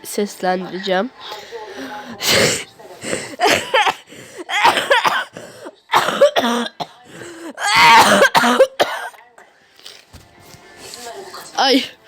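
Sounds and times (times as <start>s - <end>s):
person coughing: 3.4s - 9.2s.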